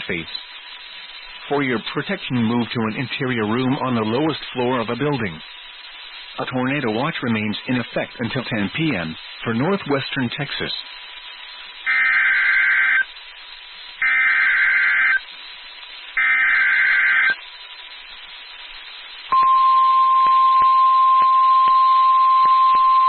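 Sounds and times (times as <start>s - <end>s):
screeching digital data bursts: 11.8s - 13.2s, 14.0s - 15.3s, 16.1s - 17.4s.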